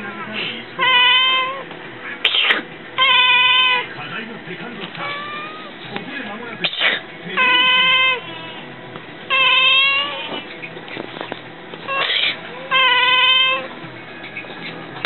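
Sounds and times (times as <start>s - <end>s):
cat meowing: 0.8s - 3.9s, 5.0s - 5.7s, 7.4s - 8.6s, 9.3s - 10.5s, 11.9s - 13.7s.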